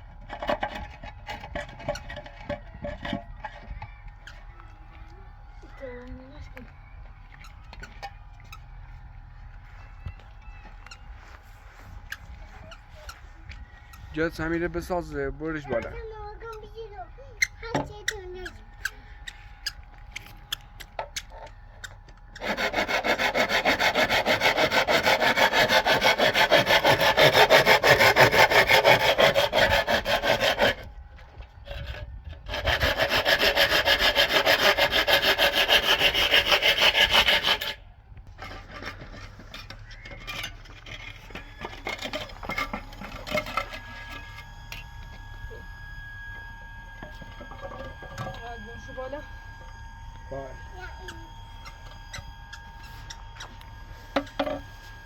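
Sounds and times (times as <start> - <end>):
fast rubbing or scraping strokes: 22.4 - 30.8, 32.5 - 37.8.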